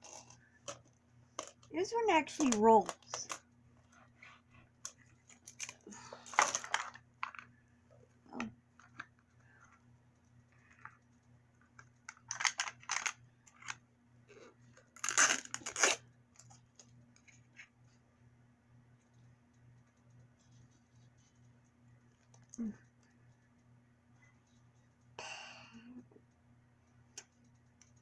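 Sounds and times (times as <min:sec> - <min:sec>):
faint low hum: 0:00.0 - 0:28.0
plastic packaging crinkling and tearing: 0:05.3 - 0:07.4, 0:15.0 - 0:16.0.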